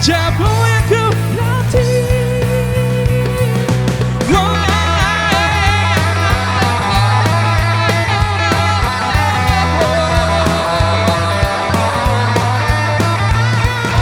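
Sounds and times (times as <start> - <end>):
steady bass notes: 0.0 - 14.0
drum hits: 3.2 - 14.0.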